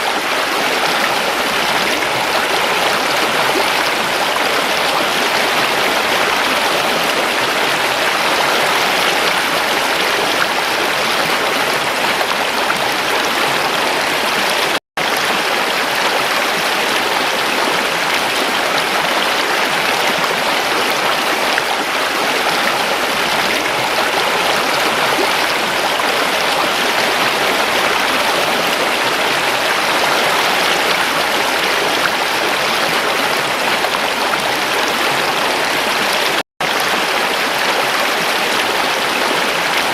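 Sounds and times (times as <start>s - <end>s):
stream rushing over rocks: 0.0s - 39.9s.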